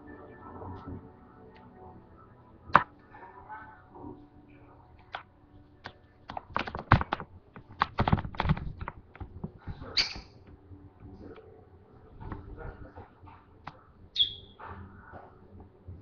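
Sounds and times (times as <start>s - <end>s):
lovebird clicking and chattering: 10.0s - 10.4s, 14.2s - 14.6s
lovebird high chirp: 10.0s - 10.4s, 14.1s - 14.6s.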